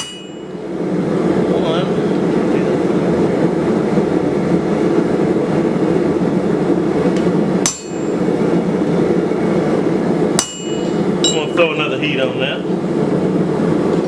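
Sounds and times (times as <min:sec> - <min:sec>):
sharp metallic clinks: 0:10.4 - 0:11.6.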